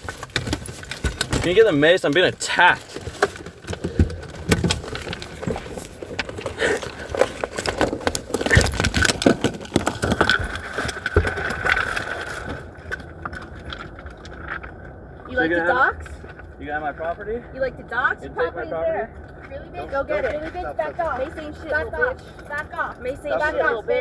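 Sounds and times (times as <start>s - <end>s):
handling knocks and rubs: 0.0s - 13.0s.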